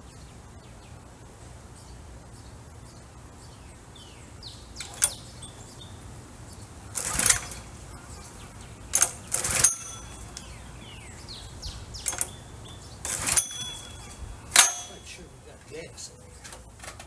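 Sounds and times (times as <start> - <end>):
birds chirping: 0.0 - 17.0
small gas engine running: 6.8 - 15.1.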